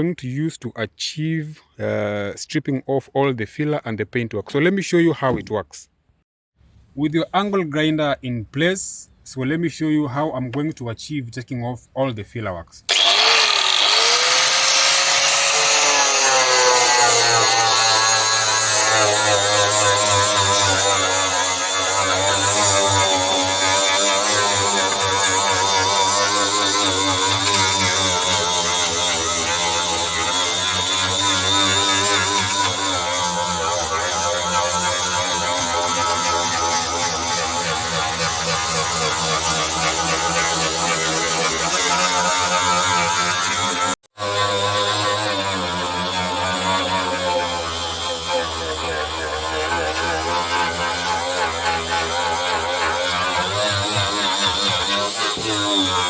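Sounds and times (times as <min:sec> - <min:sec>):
angle grinder grinding metal: 0:12.9 - 0:56.0.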